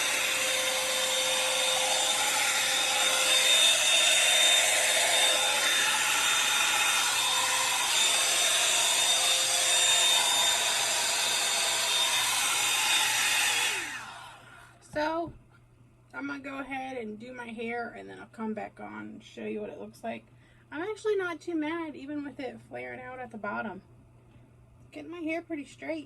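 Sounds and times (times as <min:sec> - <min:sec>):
hot-air brush whirring: 0:00.0 - 0:14.7.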